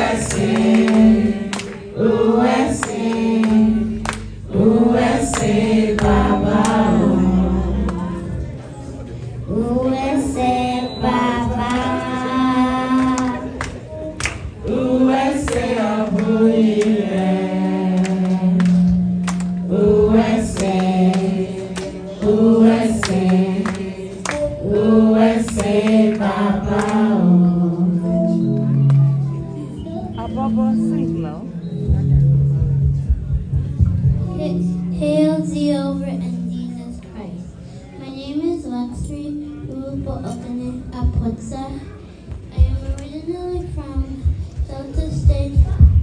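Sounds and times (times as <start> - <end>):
group singing in chorus: 0.0 - 8.6, 9.5 - 28.7.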